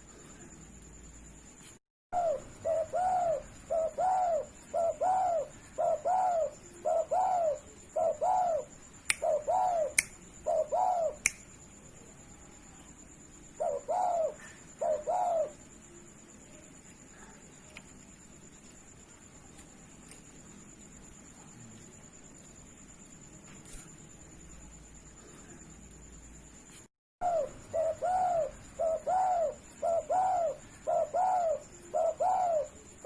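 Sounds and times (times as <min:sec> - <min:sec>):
dove cooing: 0:02.2 - 0:11.2, 0:13.6 - 0:15.6, 0:27.2 - 0:33.0
sharp clicks: 0:10.0 - 0:10.2, 0:11.2 - 0:11.5.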